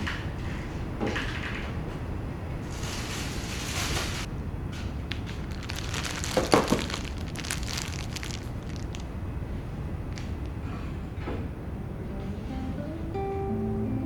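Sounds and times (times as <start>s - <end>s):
rustling: 2.6s - 9.2s.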